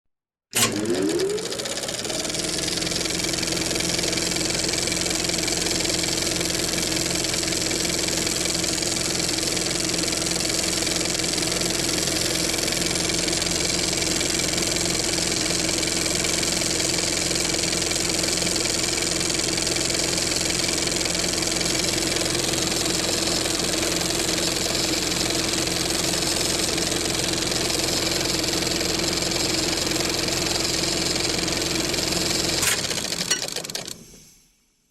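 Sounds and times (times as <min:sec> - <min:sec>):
projector mechanism clicking: 0:00.6 - 0:03.6
film projector motor whir: 0:00.6 - 0:34.2.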